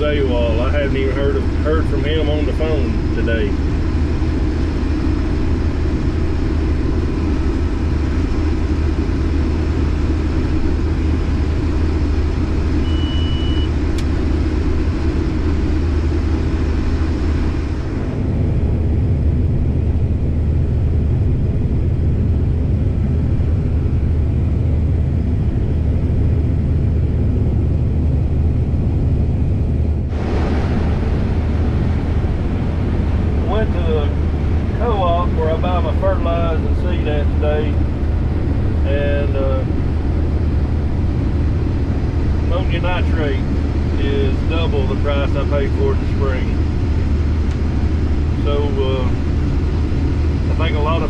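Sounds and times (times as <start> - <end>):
combine engine and threshing drone: 0.0 - 51.0
short high beep: 12.8 - 13.8.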